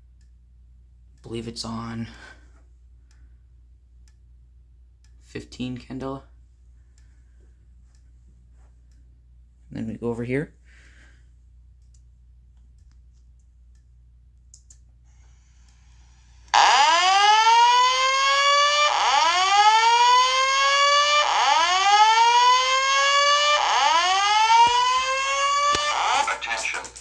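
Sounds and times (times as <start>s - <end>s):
faint hum: 0.0s - 16.5s
fire alarm rising sweep tone: 16.5s - 26.8s.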